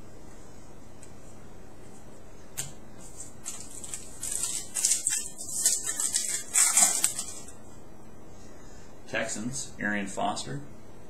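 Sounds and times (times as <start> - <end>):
cards being handled: 3.0 - 7.5
foil wrapper crinkling: 3.2 - 7.6.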